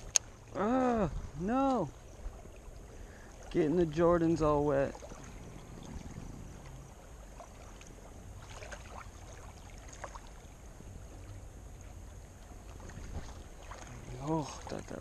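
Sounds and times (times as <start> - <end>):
light ticks: 0.0 - 0.3
low steady rumble: 0.0 - 15.0
water lapping at shoreline: 0.0 - 15.0.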